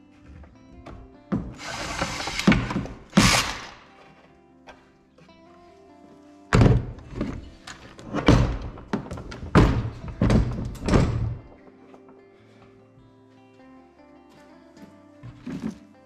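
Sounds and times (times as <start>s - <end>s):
background music: 0.0s - 16.0s
loud knocks and thunks: 6.5s - 7.4s, 8.1s - 11.4s.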